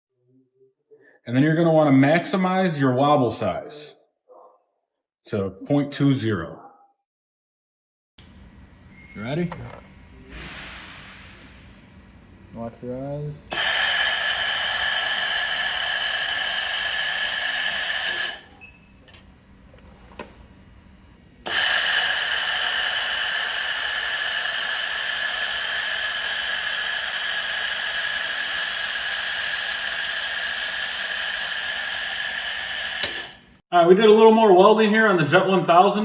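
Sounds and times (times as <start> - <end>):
laser welder buzzing hiss: 13.5 - 19.4, 21.4 - 33.6.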